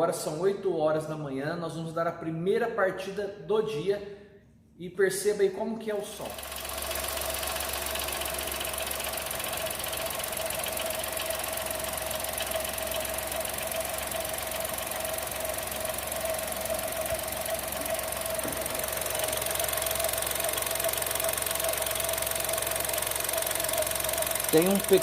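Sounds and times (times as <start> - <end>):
car engine idling: 6.2 - 25.0
engine whine: 6.3 - 25.0
fast ticking clatter: 6.4 - 25.0.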